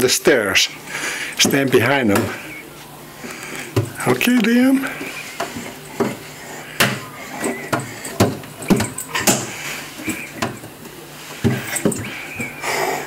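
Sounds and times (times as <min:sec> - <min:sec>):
thumps of hands and feet on steps: 0:05.0 - 0:10.8, 0:11.4 - 0:12.6.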